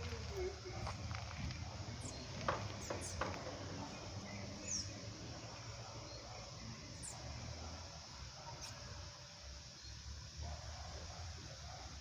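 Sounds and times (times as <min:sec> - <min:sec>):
small birds chirping: 0:00.0 - 0:07.4
steady background hiss: 0:00.0 - 0:12.0.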